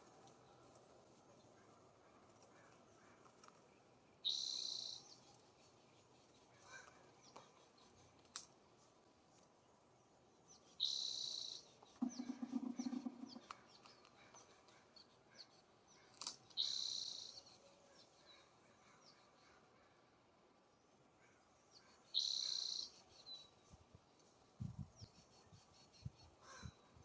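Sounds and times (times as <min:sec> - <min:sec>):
buzzy high bird calls: 0:04.2 - 0:05.4, 0:10.7 - 0:19.6, 0:21.8 - 0:23.6
faint chirps: 0:04.2 - 0:08.1, 0:10.5 - 0:15.6.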